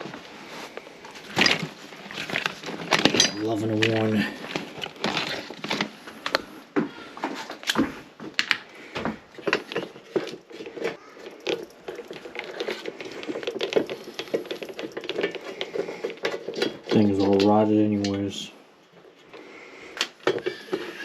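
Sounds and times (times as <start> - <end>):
fan housing clicks and scrapes: 9.4 - 18.3.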